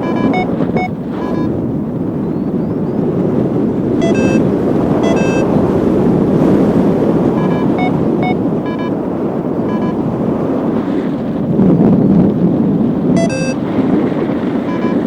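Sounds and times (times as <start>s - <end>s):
short electronic beeps: 0.0s - 1.6s, 4.0s - 5.5s, 7.4s - 9.0s, 9.6s - 10.0s, 13.2s - 13.6s, 14.7s - 15.0s
wind roaring on microphone: 0.0s - 15.0s.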